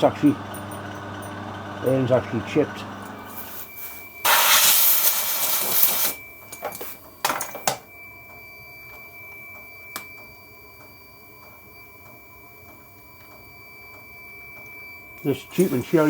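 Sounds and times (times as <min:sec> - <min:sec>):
steady high whine: 0:01.2 - 0:16.0
loud hiss: 0:04.2 - 0:06.2.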